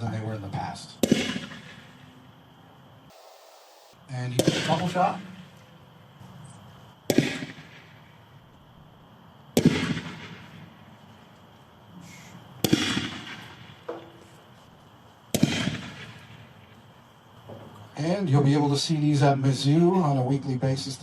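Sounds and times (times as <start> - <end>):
mortar firing bangs: 15.4 - 16.2.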